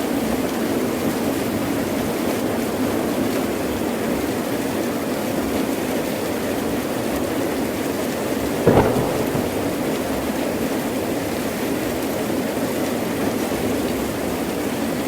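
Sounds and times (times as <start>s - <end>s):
heavy rain falling: 8.7s - 10.3s.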